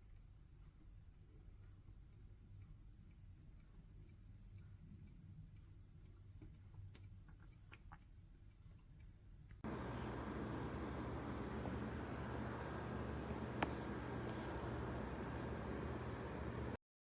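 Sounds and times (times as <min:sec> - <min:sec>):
faint regular ticking: 0:00.0 - 0:09.8
low hum: 0:09.6 - 0:16.8.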